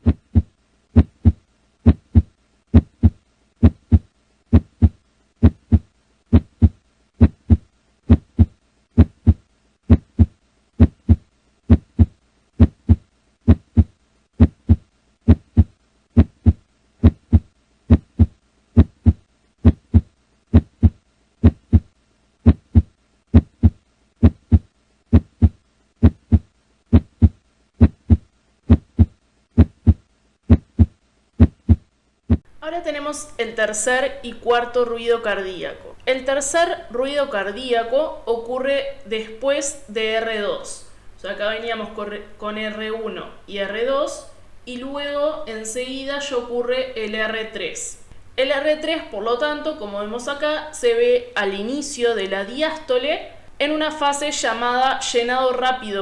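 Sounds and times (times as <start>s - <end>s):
heartbeat through stethoscope: 0.0s - 32.5s.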